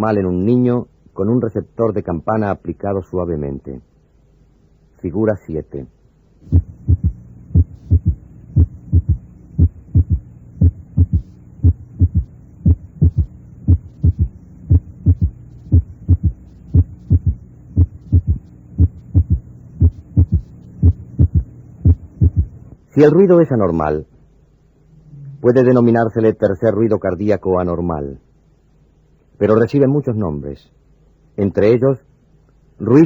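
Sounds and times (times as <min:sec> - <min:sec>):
steady low hum: 0:00.0 - 0:33.0
heartbeat through stethoscope: 0:06.4 - 0:22.6.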